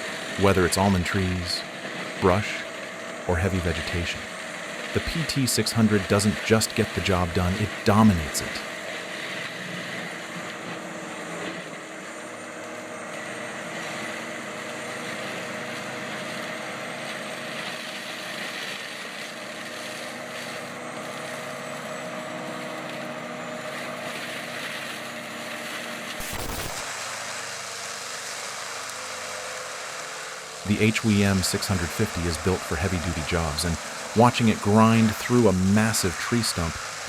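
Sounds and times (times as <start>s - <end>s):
mulcher engine drone and whine: 0.0s - 37.0s
thin machine noise: 0.0s - 37.0s.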